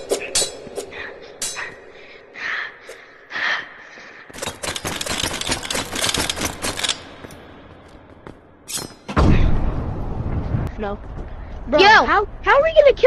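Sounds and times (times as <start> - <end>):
rapid clatter of sharp clicks: 4.3 - 7.1.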